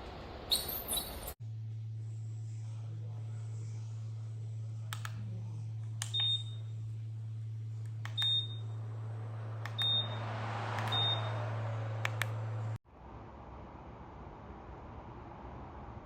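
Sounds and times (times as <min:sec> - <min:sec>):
fan humming: 0:01.2 - 0:12.7
short high beeps: 0:08.2 - 0:08.7, 0:09.8 - 0:10.2, 0:10.9 - 0:11.4.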